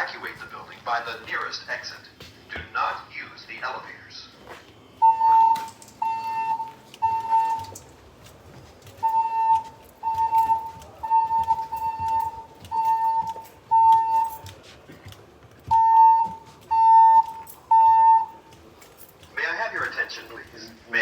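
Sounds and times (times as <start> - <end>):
fire alarm beeping: 4.5 - 14.7, 15.6 - 21.0.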